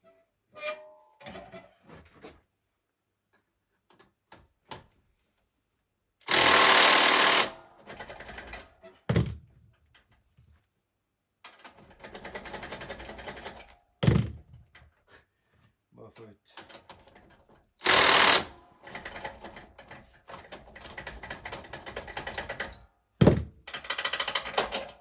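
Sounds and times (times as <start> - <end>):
fast rattling: 6.3 - 7.5.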